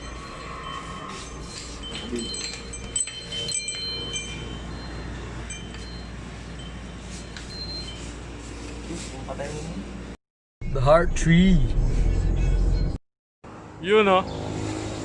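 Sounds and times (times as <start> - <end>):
metallic chimes ringing: 0.0 - 9.2
steady low rumble: 10.6 - 13.0.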